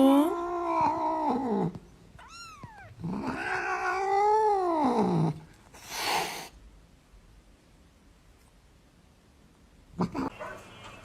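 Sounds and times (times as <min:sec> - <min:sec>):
cat yowling: 0:00.2 - 0:05.2
cat hissing: 0:00.3 - 0:06.6.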